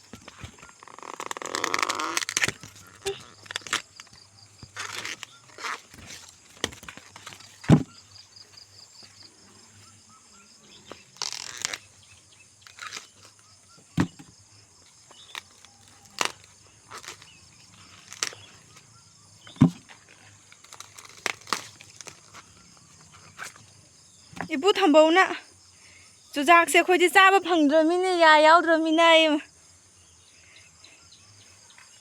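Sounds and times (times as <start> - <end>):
corn ears snapping off stalks: 0.0 - 9.1, 10.8 - 18.8, 19.5 - 23.6
leaves rustling: 0.0 - 9.9, 10.7 - 13.4, 14.8 - 18.8, 19.6 - 23.6
insects droning: 0.0 - 32.0.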